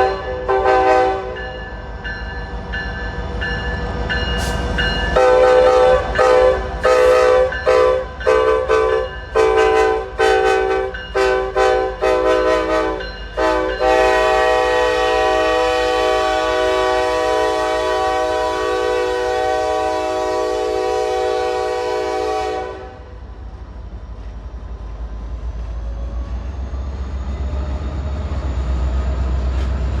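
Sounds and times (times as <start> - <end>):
locomotive air horn: 0.0 - 1.4, 5.2 - 23.1
freight train rumbling: 0.0 - 30.0.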